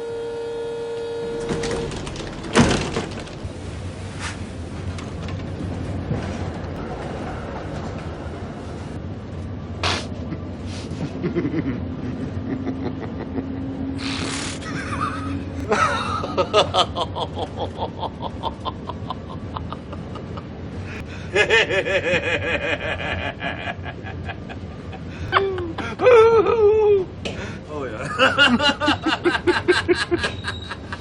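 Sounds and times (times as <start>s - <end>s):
people laughing: 10.3s - 13.6s, 14.6s - 20.5s, 21.2s - 27.1s, 27.9s - 31.0s.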